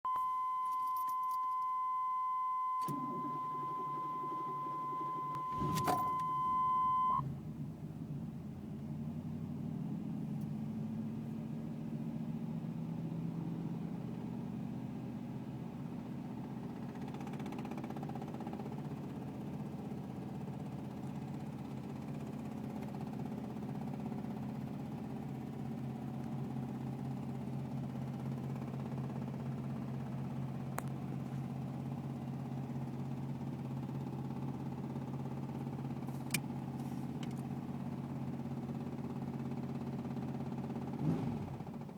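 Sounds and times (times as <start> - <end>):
engine ticking: 2.8 - 8.9
car engine idling: 2.8 - 41.9.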